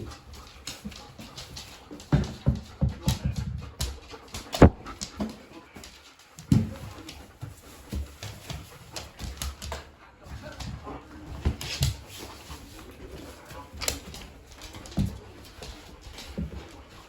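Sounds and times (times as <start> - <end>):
knocks and thumps: 4.6 - 5.0.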